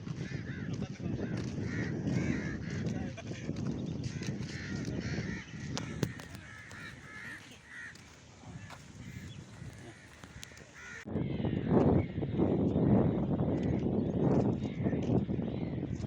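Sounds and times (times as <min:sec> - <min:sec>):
crows cawing: 0:00.2 - 0:02.9, 0:04.1 - 0:11.1.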